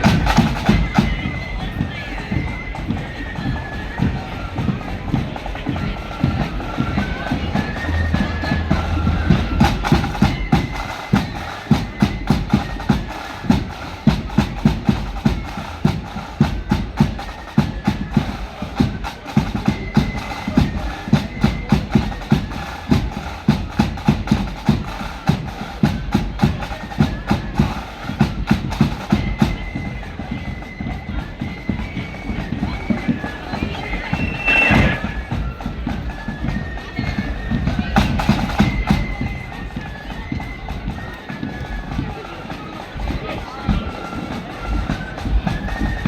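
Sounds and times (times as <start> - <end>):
flute melody: 0.0 - 46.0
rapid snare drumming: 0.0 - 46.0
heavy bass drum beats: 33.7 - 35.6.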